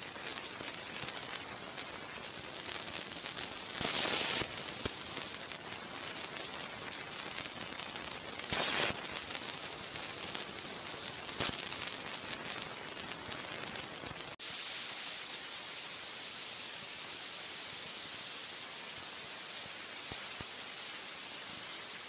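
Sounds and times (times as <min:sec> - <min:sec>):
recording hiss: 0:00.0 - 0:22.0
faint crackling: 0:00.2 - 0:14.4.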